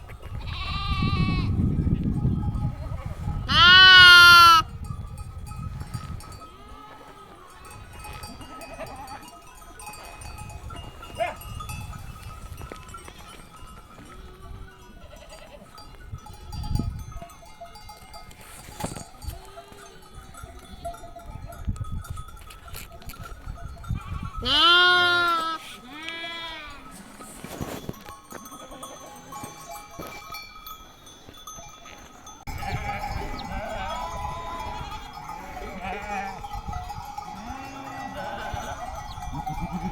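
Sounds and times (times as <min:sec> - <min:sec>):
sheep bleating: 0:00.4 - 0:01.5, 0:03.5 - 0:04.7, 0:24.0 - 0:26.8, 0:32.5 - 0:36.5, 0:37.3 - 0:39.9.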